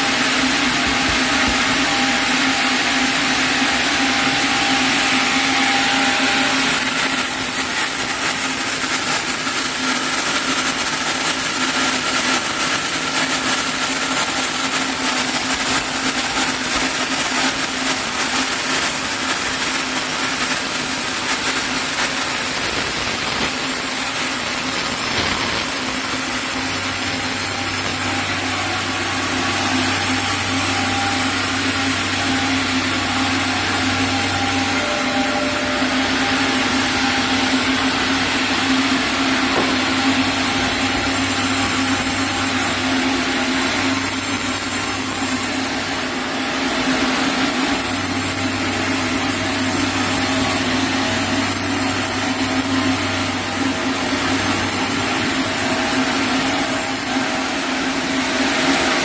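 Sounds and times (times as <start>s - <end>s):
machine hum: 0.0s - 59.0s
deeper hum: 23.7s - 45.5s.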